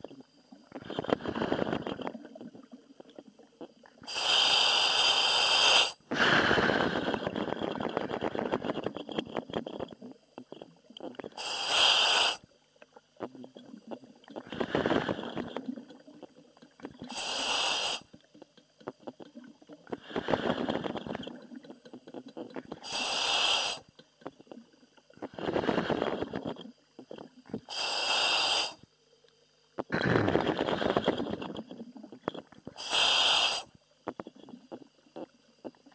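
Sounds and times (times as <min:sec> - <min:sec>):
diver breathing in helmet: 0:04.1 - 0:07.4, 0:14.4 - 0:15.5, 0:17.1 - 0:18.1, 0:19.9 - 0:21.2, 0:22.8 - 0:23.9, 0:25.3 - 0:26.4, 0:27.7 - 0:28.8, 0:32.8 - 0:33.7.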